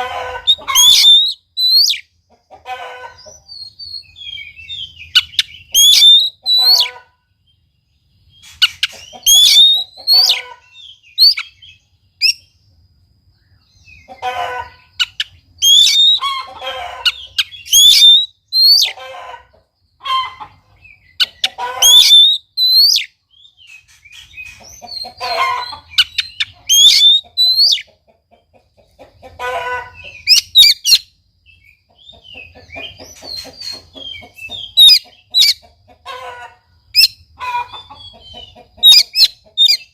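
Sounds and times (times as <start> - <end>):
bird singing whistles and chatter: 0.5 - 2.1, 3.5 - 6.9, 8.5 - 10.5, 11.1 - 11.6, 12.2 - 12.5, 15.0 - 16.3, 17.3 - 19.0, 21.2 - 24.6, 26.0 - 27.9.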